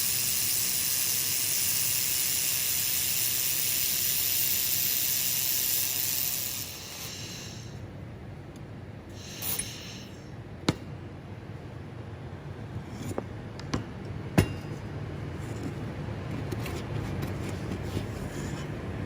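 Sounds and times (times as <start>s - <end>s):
short hiss: 0.0s - 7.8s, 9.1s - 10.2s
steady low hum: 0.0s - 19.0s.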